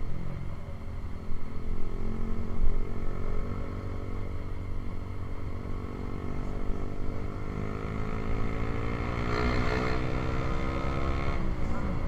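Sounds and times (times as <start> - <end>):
motorcycle engine revving: 7.2 - 11.5.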